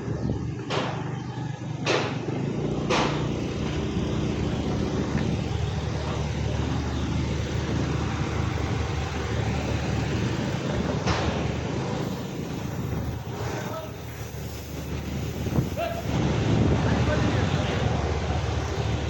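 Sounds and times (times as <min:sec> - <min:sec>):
road noise: 0:00.0 - 0:19.0
vehicle engine running: 0:00.0 - 0:19.0
sharp knocks: 0:00.6 - 0:01.1, 0:01.8 - 0:03.4.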